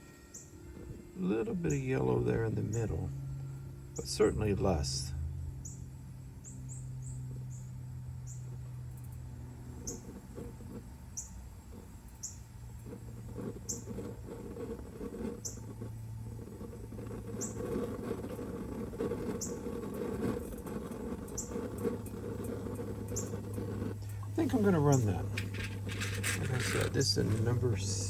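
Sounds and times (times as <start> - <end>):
gas burner rushing: 8.6 - 28.0.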